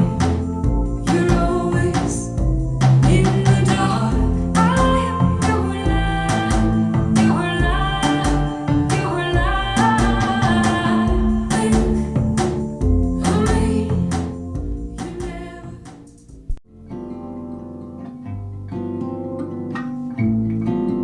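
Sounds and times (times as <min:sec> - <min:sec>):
rock song with singing over speakers: 0:00.0 - 0:12.3.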